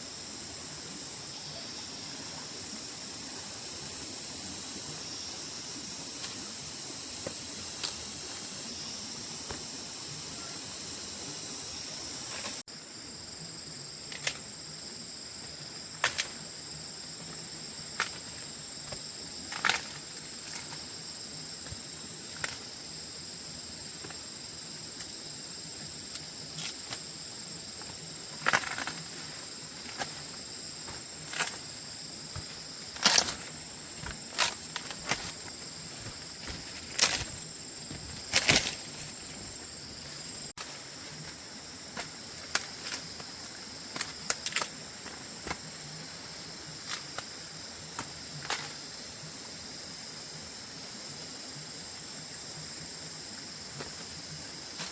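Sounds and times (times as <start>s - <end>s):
insects calling: 0.0s - 54.9s
rustling crackles: 28.3s - 41.4s.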